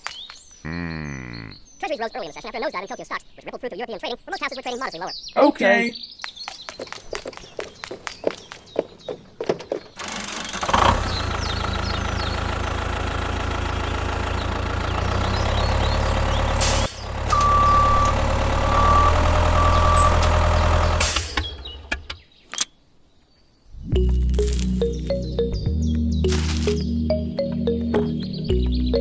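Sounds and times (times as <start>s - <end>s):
vehicle engine running: 10.0s - 21.9s
short beeps: 17.3s - 20.2s
music: 23.8s - 29.0s.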